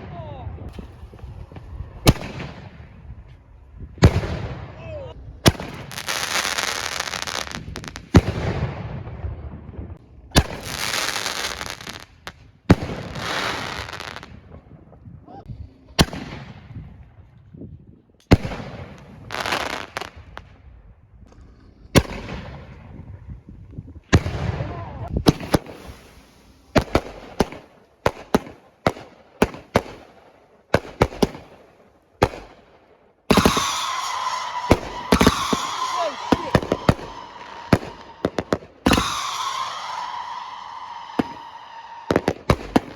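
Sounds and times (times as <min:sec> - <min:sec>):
fireworks banging: 0:00.0 - 0:15.0, 0:21.2 - 0:32.6, 0:33.3 - 0:42.9
fireworks hissing: 0:00.7 - 0:02.8, 0:25.2 - 0:27.7, 0:33.3 - 0:42.9.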